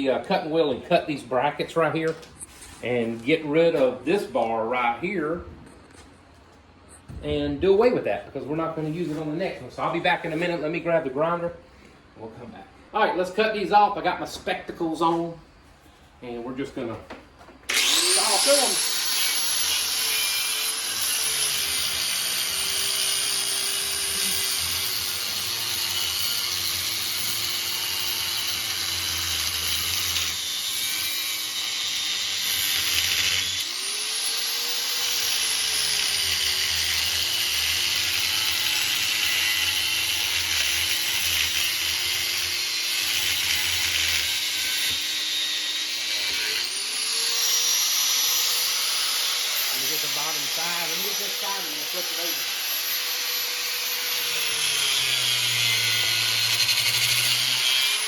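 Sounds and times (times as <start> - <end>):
angle grinder cutting steel: 17.7 - 58.0.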